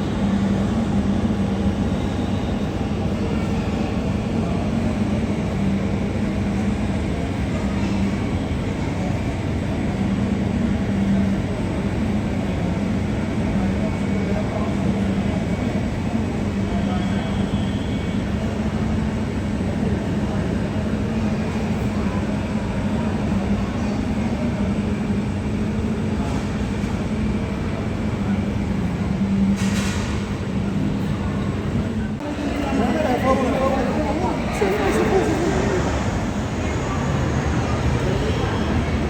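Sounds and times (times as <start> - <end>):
jet engines rumbling: 27.3 - 39.0.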